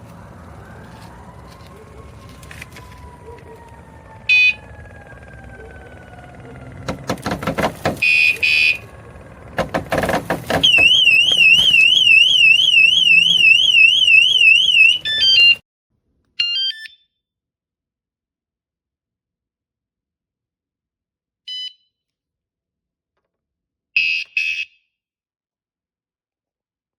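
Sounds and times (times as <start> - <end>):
fast high warbling alarm: 0.2 - 15.6
alarm unit beeping: 3.0 - 15.6
knocks of unit being handled: 6.8 - 8.0, 9.6 - 11.0.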